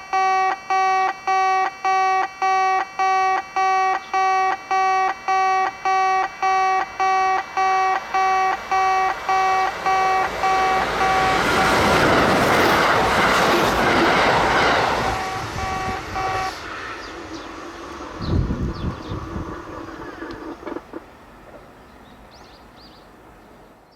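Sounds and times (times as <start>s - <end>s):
level crossing warning bell: 0.0s - 12.8s, 15.0s - 16.6s
train rumbling over crossing: 0.0s - 23.9s.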